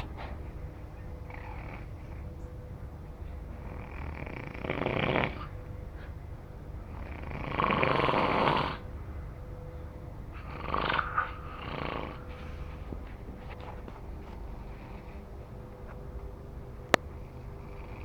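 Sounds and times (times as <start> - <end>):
drawn-out snores: 1.2 - 2.6, 3.4 - 6.2, 6.8 - 9.0, 10.3 - 13.0, 14.4 - 15.6, 17.2 - 18.0.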